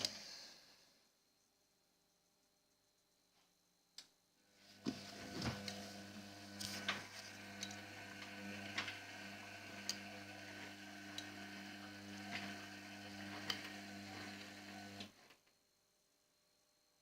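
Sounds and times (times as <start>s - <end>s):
washing machine motor hum: 4.5s - 15.2s.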